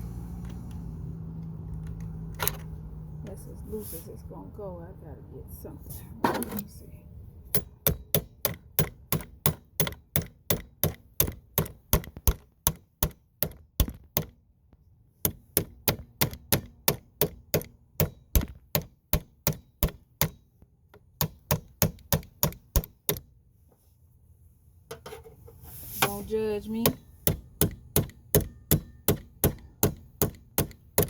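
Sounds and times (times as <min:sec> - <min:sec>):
rapid hammering on metal clamp: 0:07.5 - 0:14.4, 0:15.2 - 0:23.3, 0:26.8 - 0:31.0.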